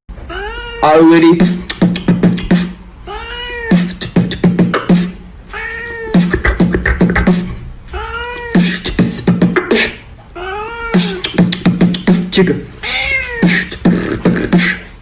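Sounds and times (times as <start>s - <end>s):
cat meowing: 0.3s - 1.3s, 3.0s - 3.9s, 5.5s - 6.3s, 7.9s - 8.8s, 10.4s - 11.4s, 12.8s - 13.7s
rhythmic clicks and thumps: 1.4s - 2.8s, 3.7s - 5.2s, 6.2s - 7.6s, 8.6s - 10.0s, 11.0s - 12.5s.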